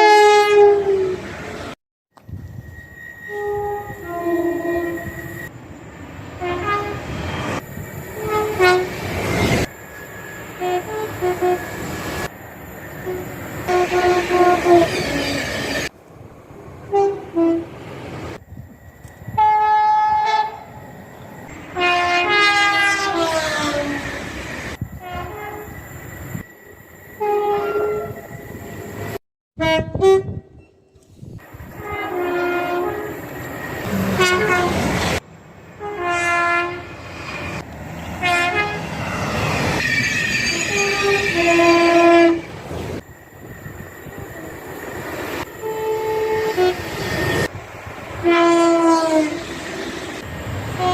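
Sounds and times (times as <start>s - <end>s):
train horn blasts: 0.0s - 1.3s, 3.3s - 5.5s, 6.4s - 7.1s, 8.2s - 9.0s, 10.6s - 11.8s, 13.0s - 15.4s, 16.9s - 17.8s, 19.4s - 20.7s, 21.7s - 24.1s, 24.9s - 25.8s, 27.2s - 28.3s, 29.6s - 30.8s, 31.7s - 35.2s, 35.8s - 37.0s, 38.2s - 38.9s, 40.0s - 42.5s, 45.4s - 47.5s, 48.2s - 49.5s
trains running on track: 0.0s - 29.2s, 30.6s - 50.9s.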